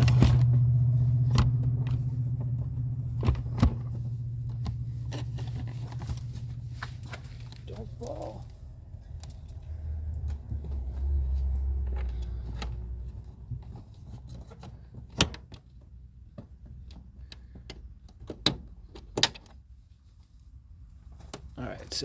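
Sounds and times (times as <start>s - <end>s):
low rumble: 0.0s - 14.2s.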